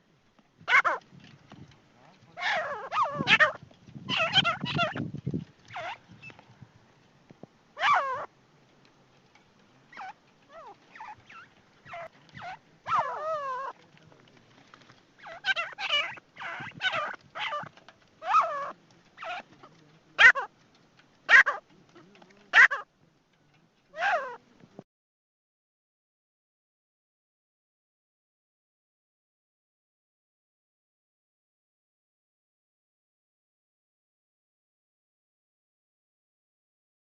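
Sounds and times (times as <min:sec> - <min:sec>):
francolin calling: 0:00.6 - 0:01.1, 0:02.4 - 0:06.4, 0:07.8 - 0:08.4, 0:09.8 - 0:13.8, 0:15.2 - 0:20.6, 0:21.2 - 0:23.0, 0:23.9 - 0:24.5.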